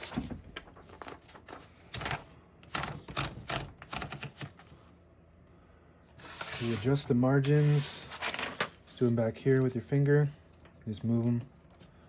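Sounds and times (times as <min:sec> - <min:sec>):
typewriter clicking and clacking: 0:01.9 - 0:04.6.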